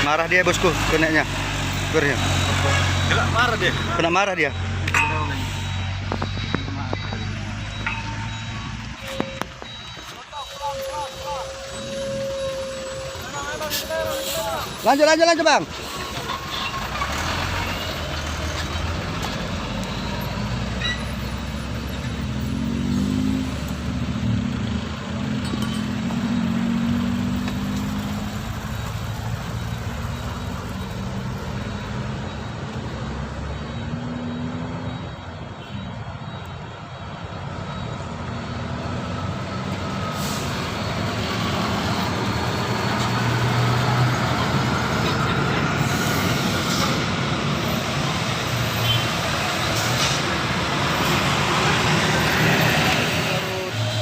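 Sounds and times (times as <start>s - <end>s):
heavy truck engines labouring: 0.0s - 54.0s.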